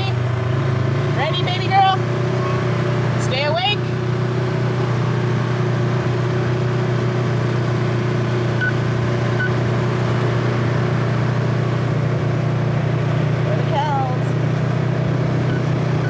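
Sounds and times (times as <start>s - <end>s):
vehicle engine drone: 0.0s - 16.0s
faint high beeps: 8.6s - 8.8s, 15.4s - 15.7s.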